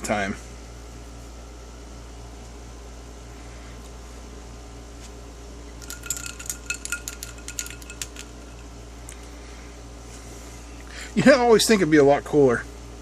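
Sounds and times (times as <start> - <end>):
steady low hum: 0.0 - 13.0
ice cubes clinking in glass: 5.8 - 8.7.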